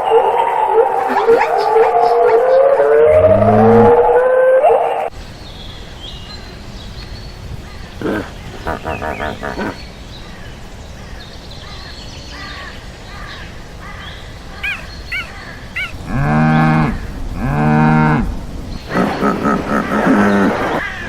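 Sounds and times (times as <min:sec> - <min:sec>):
outdoor ambience: 0:00.0 - 0:21.0
bird chirps: 0:05.4 - 0:10.5, 0:14.0 - 0:16.2
cow mooing: 0:14.7 - 0:18.3.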